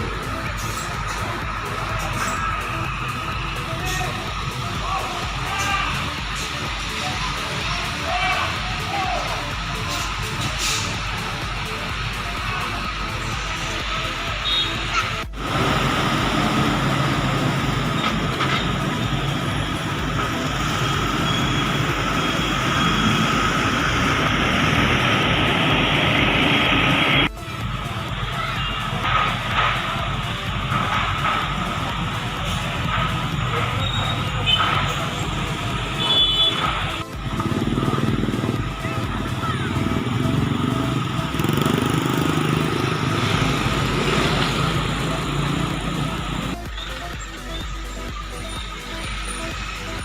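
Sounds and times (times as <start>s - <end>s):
motorcycle engines: 0.0s - 50.0s
road traffic passing: 0.0s - 50.0s.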